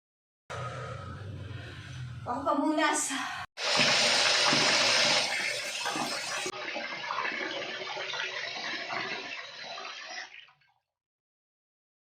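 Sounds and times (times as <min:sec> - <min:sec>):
running water splashing: 0:03.6 - 0:10.6.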